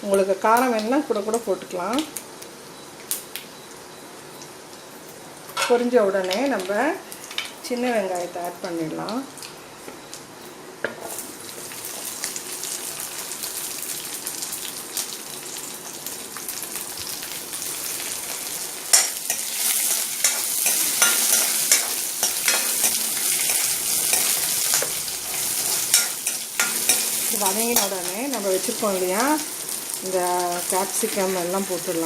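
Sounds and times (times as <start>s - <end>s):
hot oil sizzling in a pan: 11.0s - 32.0s.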